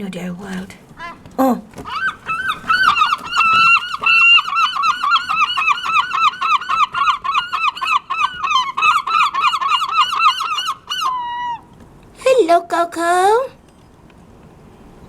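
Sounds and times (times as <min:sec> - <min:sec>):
seagulls calling: 0:00.9 - 0:12.0.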